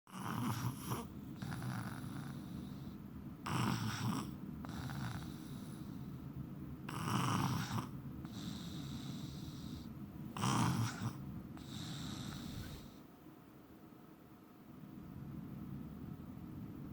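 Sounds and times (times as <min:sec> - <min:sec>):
person snoring: 0:00.1 - 0:02.9, 0:03.5 - 0:05.9, 0:06.9 - 0:13.0
quiet breathing: 0:00.2 - 0:13.2.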